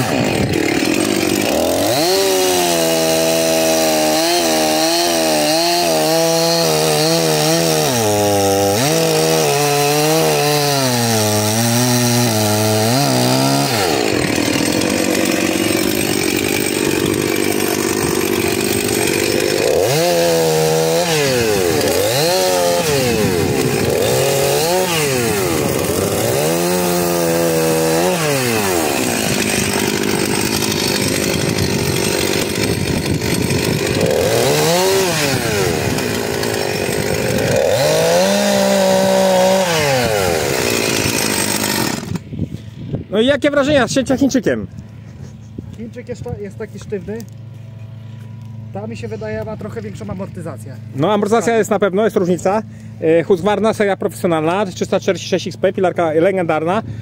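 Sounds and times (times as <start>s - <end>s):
chainsaw cutting logs: 0.0s - 42.9s, 44.3s - 57.0s.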